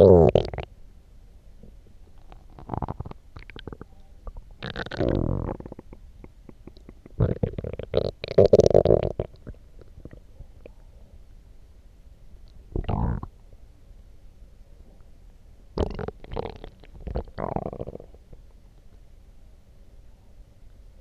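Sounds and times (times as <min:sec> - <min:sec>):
stomach growling: 0:02.2 - 0:10.8, 0:12.7 - 0:13.4, 0:15.8 - 0:18.5.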